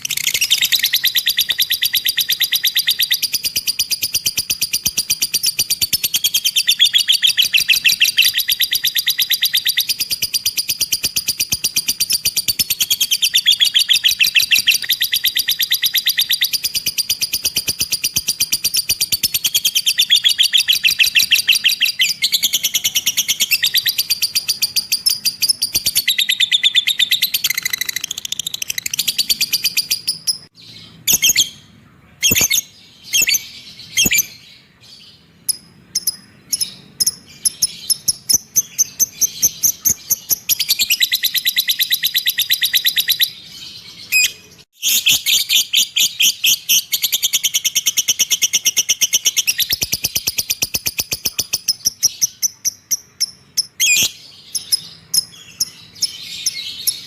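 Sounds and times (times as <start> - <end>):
lovebird chattering trills: 0.0 - 30.5.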